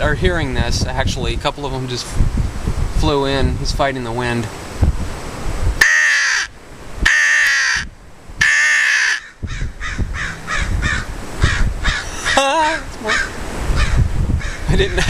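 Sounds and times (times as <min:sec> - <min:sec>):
wind rumbling on microphone: 0:00.0 - 0:15.0
crow call caws: 0:05.8 - 0:06.5, 0:07.1 - 0:12.4, 0:13.1 - 0:14.7.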